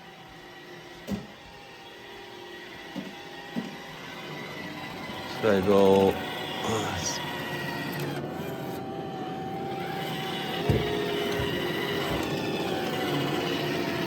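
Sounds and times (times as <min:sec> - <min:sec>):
robot vacuum running: 0:00.0 - 0:14.0
thump: 0:10.6 - 0:12.3.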